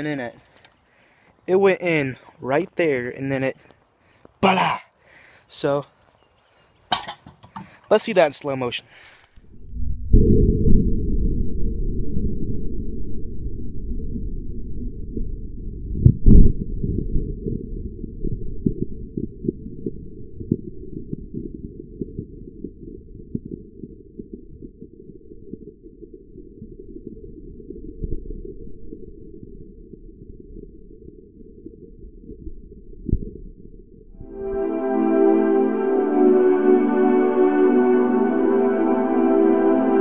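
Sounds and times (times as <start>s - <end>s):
low crackles: 0.0s - 4.4s, 7.9s - 35.1s.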